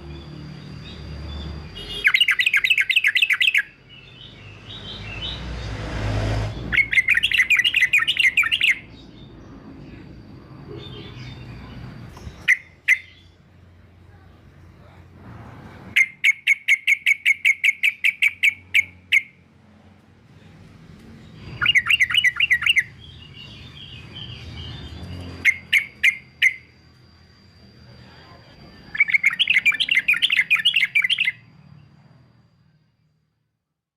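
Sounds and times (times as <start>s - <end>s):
bird calling sharp repeated notes: 1.7s - 3.8s, 6.7s - 8.9s, 12.4s - 13.4s, 16.0s - 19.4s, 21.5s - 23.0s, 25.4s - 26.8s, 28.9s - 31.5s.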